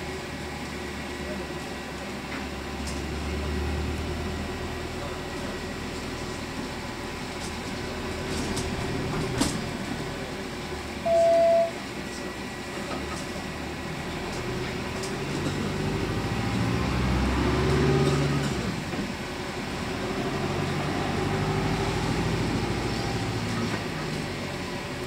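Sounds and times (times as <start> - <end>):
bus cabin rumble: 0.0 - 25.0
short loud beep: 11.0 - 11.8.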